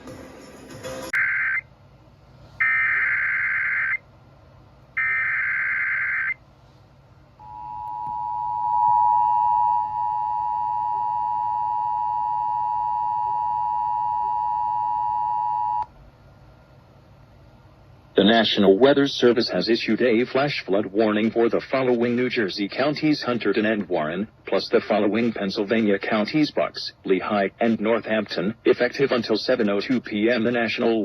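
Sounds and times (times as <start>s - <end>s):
two-tone attention signal: 7.4s - 15.8s.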